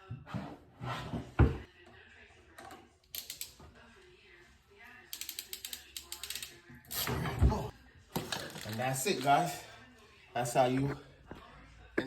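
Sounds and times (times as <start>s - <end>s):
ratcheting tool clicking: 3.1s - 3.6s, 5.1s - 6.6s.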